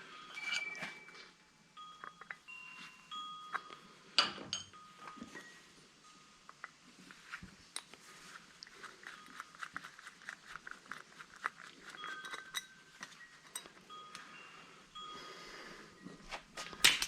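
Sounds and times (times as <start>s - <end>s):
metal parts clicking and tapping: 11.8s - 13.7s.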